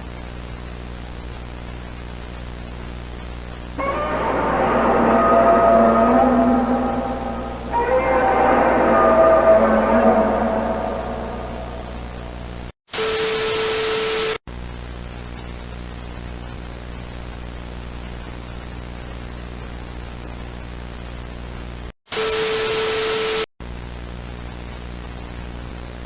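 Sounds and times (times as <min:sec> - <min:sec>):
broadcast static with hum: 0:00.0 - 0:26.0
loud static blast with tone: 0:03.8 - 0:14.4.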